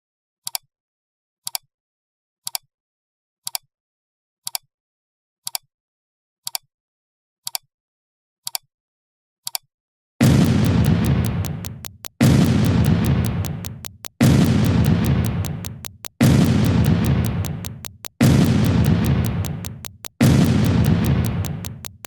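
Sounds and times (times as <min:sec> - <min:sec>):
loud explosion-like blast: 0:10.2 - 0:11.5
sharp double clicks: 0:10.2 - 0:22.0.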